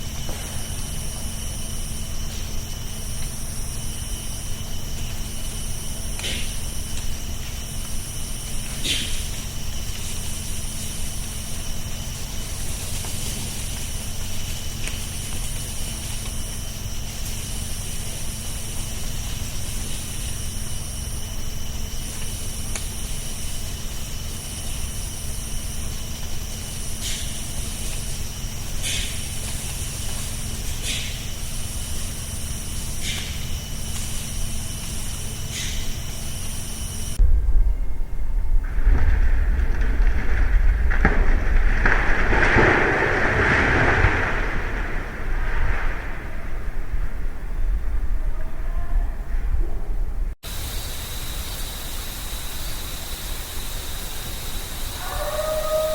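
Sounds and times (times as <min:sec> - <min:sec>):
high-pitched buzz: 0:00.0 - 0:37.2, 0:50.4 - 0:55.9
low rumble and hiss: 0:00.0 - 0:55.9
wind buffeting microphone: 0:37.2 - 0:50.4.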